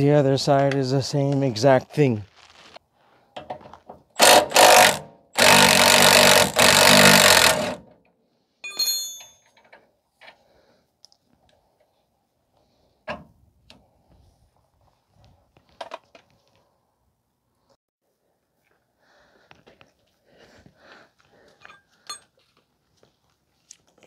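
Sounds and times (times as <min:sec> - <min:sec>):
impact wrench bursts: 0:04.2 - 0:07.8
metal tool clinking: 0:08.6 - 0:09.8, 0:21.6 - 0:22.4.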